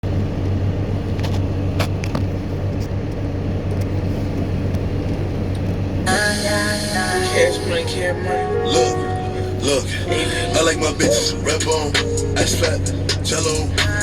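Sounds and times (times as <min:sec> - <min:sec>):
diesel engine running: 0:00.0 - 0:14.0
rap music: 0:06.1 - 0:14.0.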